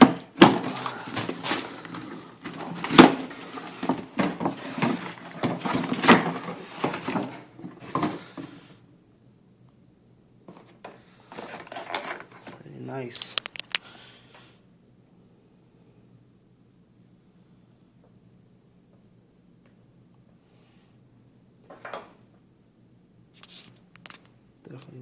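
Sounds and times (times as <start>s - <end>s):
knocks and clatter of parts: 0.0s - 8.5s
packaging rustling: 0.0s - 8.5s, 10.5s - 13.8s.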